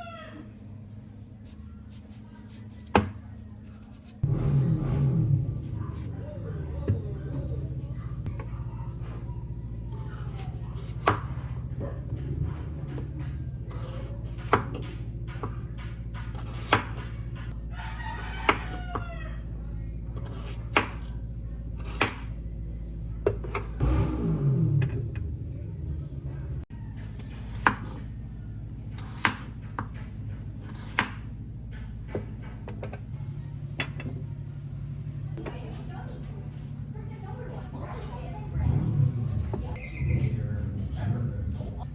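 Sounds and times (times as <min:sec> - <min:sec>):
steady low hum: 0:00.0 - 0:41.9.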